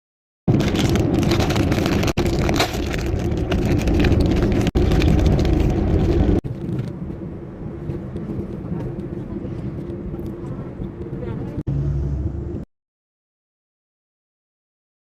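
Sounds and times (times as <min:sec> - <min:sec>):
road traffic rumble: 0:00.5 - 0:12.7.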